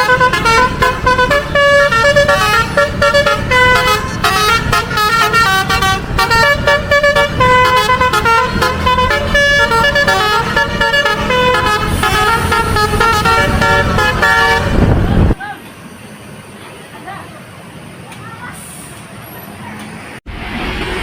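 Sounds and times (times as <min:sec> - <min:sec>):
musical bus air horn: 0:00.0 - 0:15.4
low bus rumble: 0:00.0 - 0:21.0.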